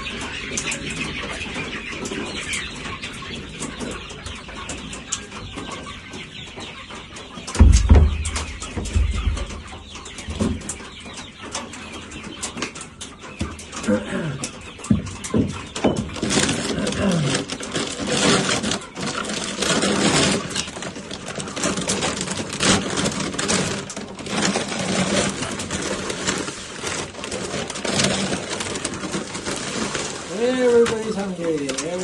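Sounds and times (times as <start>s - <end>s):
feed pellets rattling in feeder: 15.2s - 32.0s.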